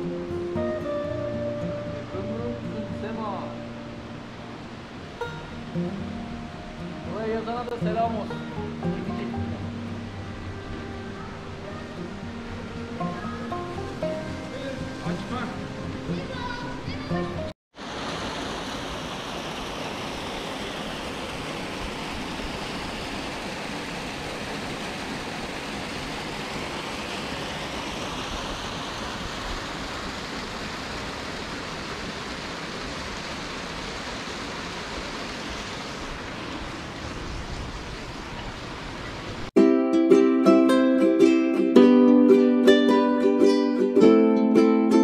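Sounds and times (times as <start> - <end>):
water rushing in stream: 0.0 - 45.0.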